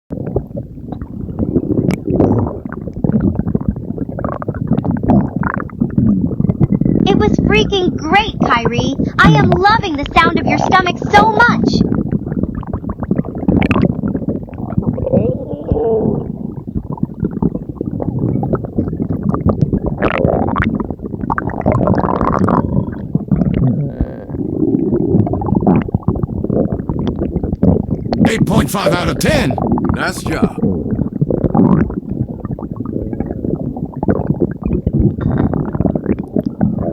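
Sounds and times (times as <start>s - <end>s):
stomach growling: 0.1s - 7.5s, 11.8s - 28.0s, 32.6s - 36.9s.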